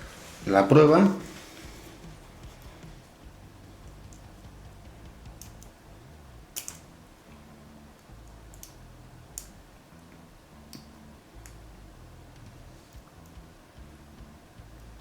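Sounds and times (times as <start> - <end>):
metal track pieces clicking: 6.6 - 6.8.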